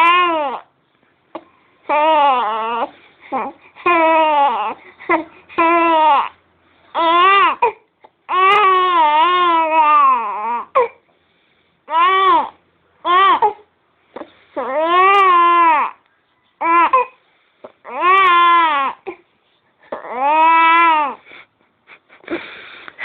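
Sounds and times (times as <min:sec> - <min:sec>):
baby crying: 0:00.0 - 0:00.7, 0:01.9 - 0:11.0, 0:11.9 - 0:13.7, 0:14.6 - 0:16.0, 0:16.6 - 0:17.2, 0:17.8 - 0:19.2, 0:19.9 - 0:21.2.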